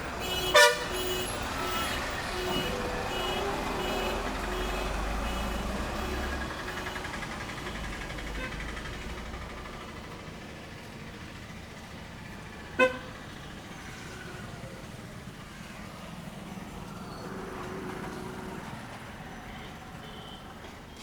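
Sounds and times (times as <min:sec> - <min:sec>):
vehicle passing: 0:00.0 - 0:10.1, 0:13.8 - 0:20.0
street traffic: 0:00.0 - 0:21.0
vehicle horn toot: 0:00.2 - 0:07.2, 0:12.8 - 0:13.1, 0:19.6 - 0:21.0.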